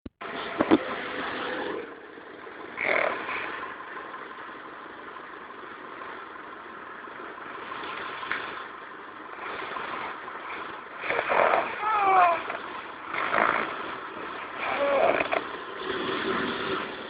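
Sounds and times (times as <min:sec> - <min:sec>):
animal snoring: 0:02.8 - 0:03.6, 0:11.0 - 0:13.8, 0:14.5 - 0:15.4.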